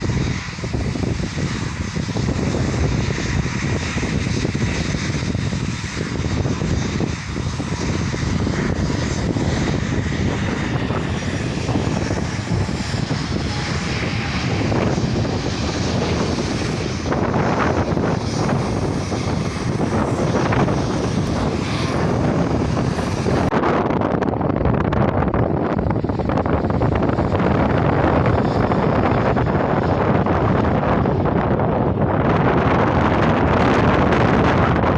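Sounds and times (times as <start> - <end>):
airliner engines at takeoff: 0.0 - 34.9.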